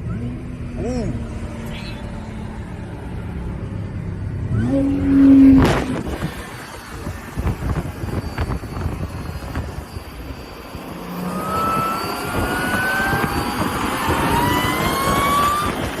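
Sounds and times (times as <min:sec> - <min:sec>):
car engine rumble: 0:00.0 - 0:16.0
supercharger whine: 0:00.0 - 0:16.0.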